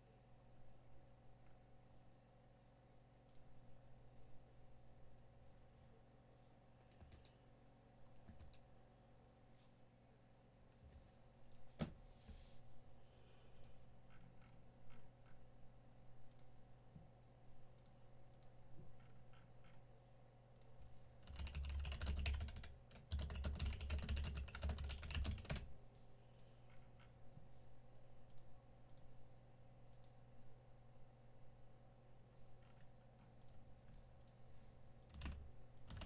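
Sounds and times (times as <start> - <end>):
keyboard clicking: 21.2 - 25.7, 35.0 - 36.0.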